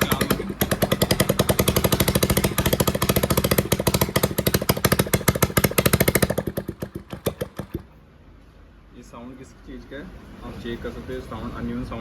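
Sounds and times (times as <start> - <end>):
motorcycle engine idling unevenly: 0.0 - 8.0.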